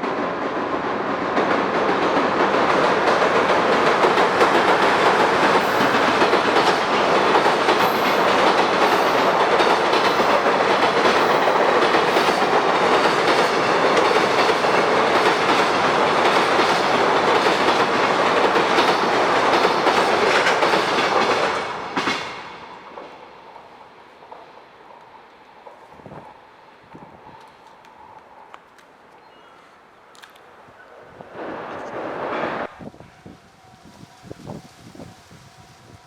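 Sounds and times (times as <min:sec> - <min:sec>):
wheels clacking over rail joints: 0:00.0 - 0:23.3
train rumbling past: 0:00.0 - 0:28.6, 0:31.0 - 0:36.0.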